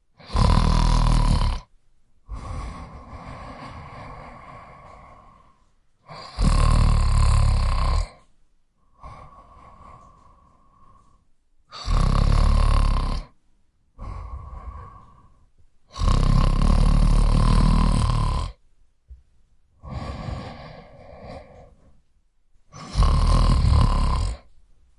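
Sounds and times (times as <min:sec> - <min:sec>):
quiet breaths: 0:00.0 - 0:24.9
man snoring: 0:00.2 - 0:01.7, 0:02.3 - 0:08.3, 0:08.9 - 0:13.4, 0:14.0 - 0:18.6, 0:19.8 - 0:21.9, 0:22.7 - 0:24.5.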